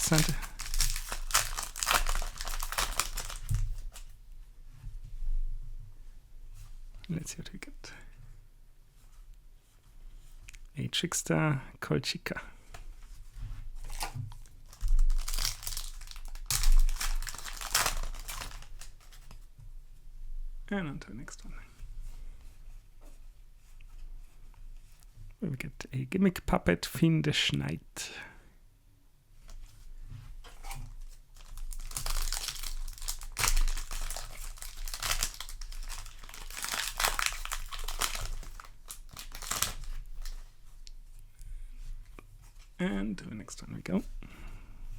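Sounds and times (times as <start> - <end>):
cards shuffling: 0.0 - 4.1, 13.8 - 19.3, 31.4 - 40.4
foil wrapper crinkling: 0.0 - 4.2, 13.8 - 19.4, 30.9 - 40.5.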